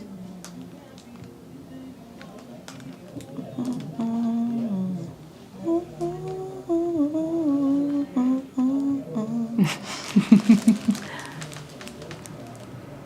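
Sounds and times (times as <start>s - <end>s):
person humming: 3.4s - 11.5s
person breathing: 9.6s - 10.2s, 10.8s - 11.7s.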